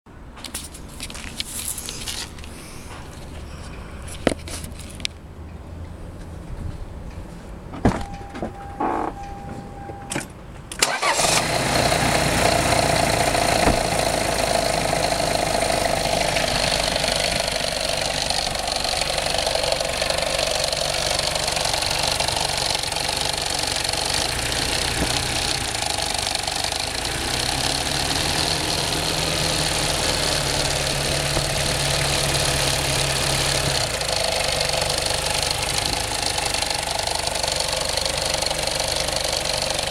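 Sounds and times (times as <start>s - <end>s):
diesel engine idling: 8.0s - 10.1s, 10.8s - 39.9s
short steady beep: 8.0s - 10.2s
high whine: 11.4s - 27.0s.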